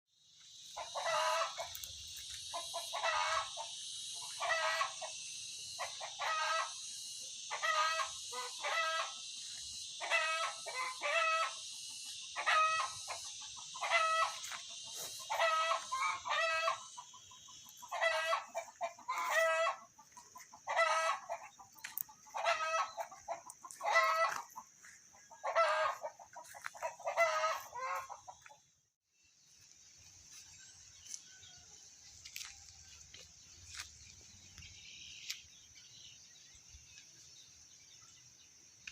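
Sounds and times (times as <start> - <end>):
chicken calling: 0.8 - 1.9, 2.5 - 5.1, 5.8 - 6.8, 7.5 - 9.2, 10.0 - 11.6, 12.3 - 28.6.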